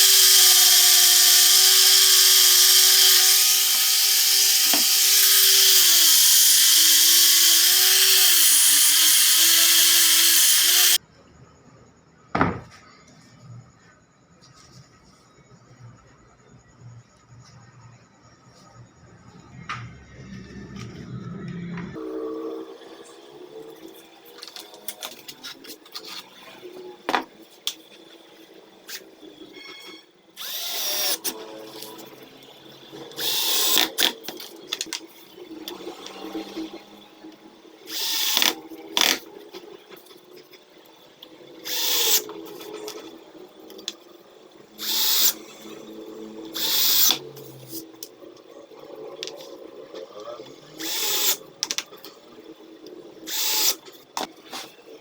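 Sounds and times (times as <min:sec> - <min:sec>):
power tool running: 0:00.0 - 0:11.0, 0:28.8 - 0:34.9, 0:37.8 - 0:39.3, 0:41.6 - 0:43.9, 0:44.7 - 0:48.1, 0:50.6 - 0:51.8, 0:53.2 - 0:53.9.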